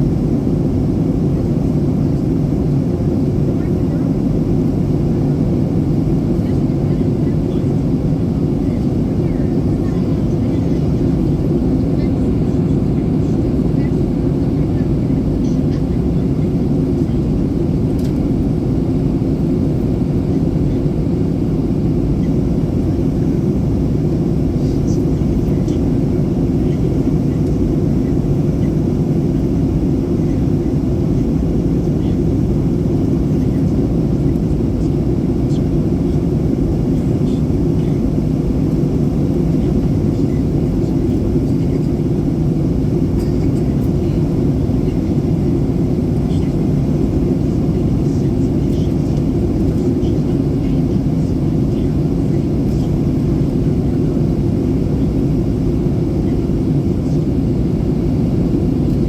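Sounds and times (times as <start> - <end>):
airplane cabin rumble: 0.0 - 59.0.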